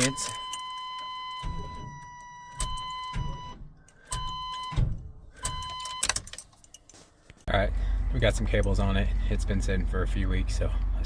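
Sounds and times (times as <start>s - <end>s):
dashboard warning chime: 0.0s - 6.3s.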